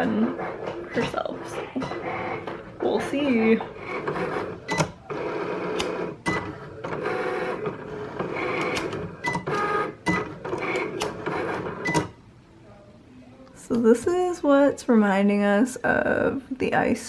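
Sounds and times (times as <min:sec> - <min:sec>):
cutting machine motors whirring: 0:00.0 - 0:12.1.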